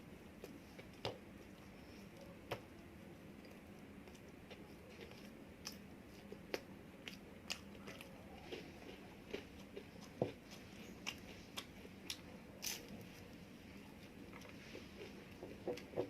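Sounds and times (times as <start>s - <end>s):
person chewing crunchy food: 3.4s - 13.3s.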